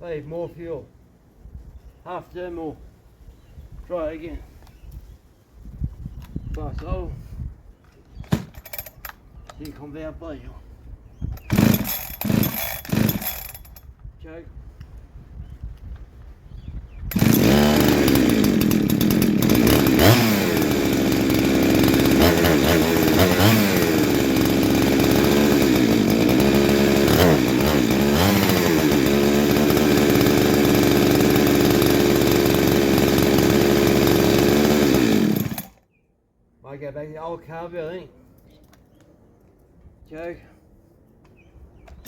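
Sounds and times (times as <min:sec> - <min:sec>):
chainsaw running unevenly: 0:11.4 - 0:13.8, 0:17.1 - 0:35.8.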